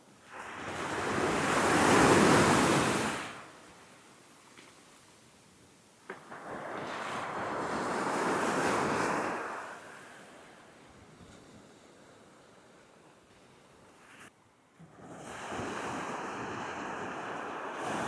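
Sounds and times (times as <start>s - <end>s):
surf rushing up sand: 15.0s - 18.0s.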